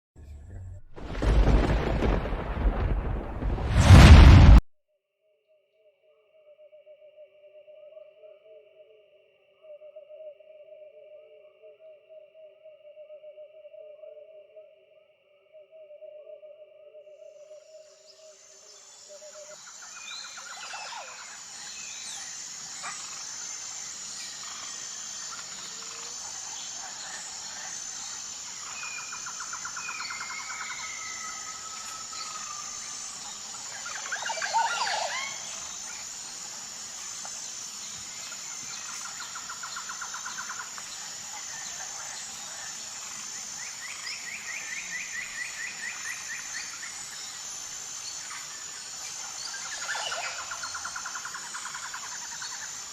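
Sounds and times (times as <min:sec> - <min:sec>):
high-pitched insect buzz: 0:17.2 - 0:52.9.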